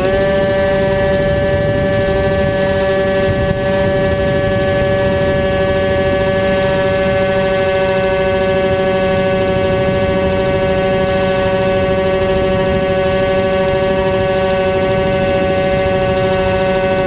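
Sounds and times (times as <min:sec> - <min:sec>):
model aircraft motor and propeller: 0:00.0 - 0:17.0
rushing wind noise: 0:00.0 - 0:17.0.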